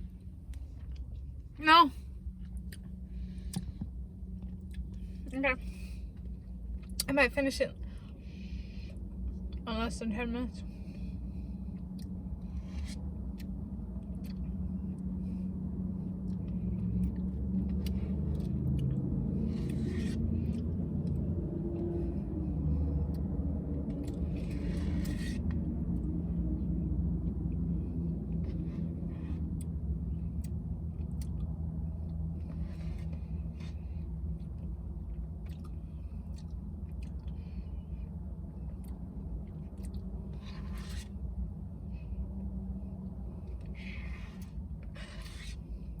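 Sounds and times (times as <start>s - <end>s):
soft chewing: 0.0s - 7.1s, 11.7s - 15.1s, 16.0s - 26.1s, 26.8s - 46.0s
steady low rumble: 0.0s - 46.0s
plastic spoon scraping a cup: 19.4s - 20.6s, 24.2s - 25.4s, 40.4s - 41.1s, 43.8s - 46.0s.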